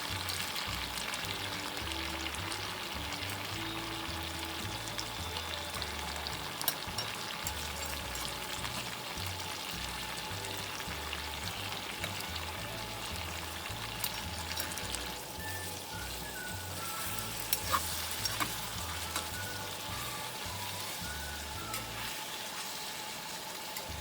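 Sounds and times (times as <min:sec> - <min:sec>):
food sizzling over a fire: 0:00.0 - 0:24.0.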